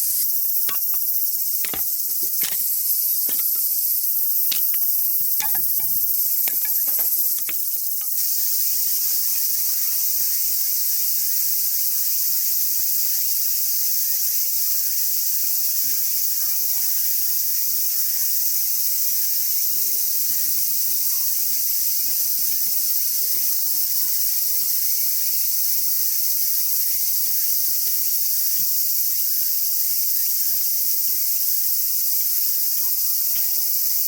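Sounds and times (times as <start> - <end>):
sharp clicks and pops: 0.0 - 3.7, 4.5 - 8.2
high-pitched insect chorus: 0.0 - 34.0.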